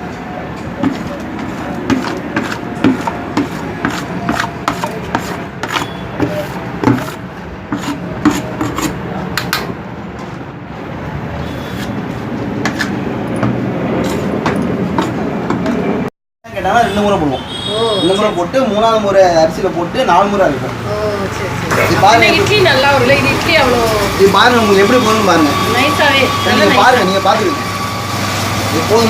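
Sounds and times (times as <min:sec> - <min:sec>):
wet-grinding mill running: 0:00.8 - 0:07.2, 0:21.7 - 0:29.0
grinding rasp: 0:01.9 - 0:09.0.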